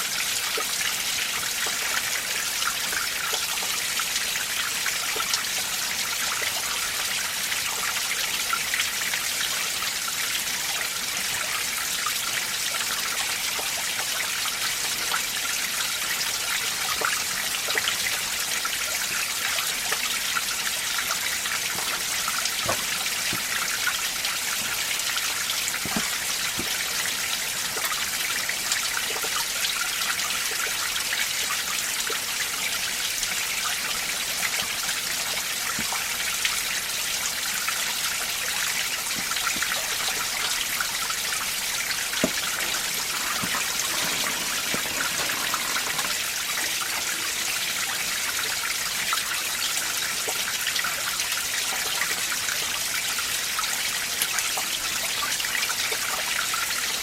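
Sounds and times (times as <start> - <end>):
stream water rushing: 38.1 - 49.8.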